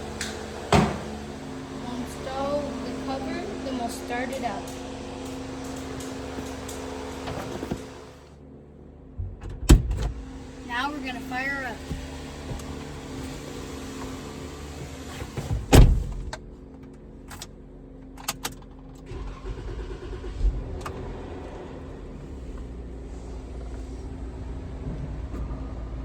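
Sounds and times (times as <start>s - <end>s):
car engine idling: 0.0s - 26.0s
loud thump: 0.7s - 1.2s.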